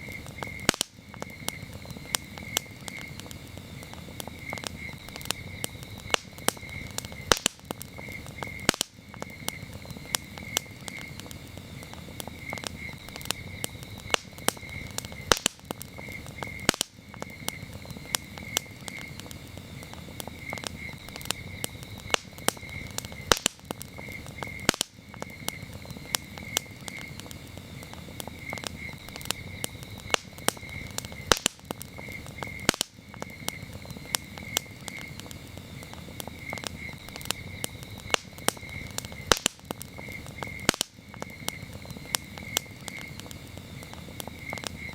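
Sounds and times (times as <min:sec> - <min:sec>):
campfire crackling and popping: 0:00.0 - 0:44.9
crickets chirping: 0:00.0 - 0:44.9.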